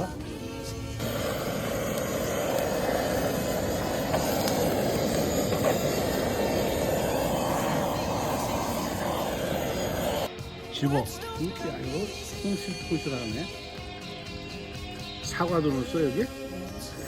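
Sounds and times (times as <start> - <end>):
campfire burning: 1.0 - 10.3
fire popping: 1.0 - 10.3.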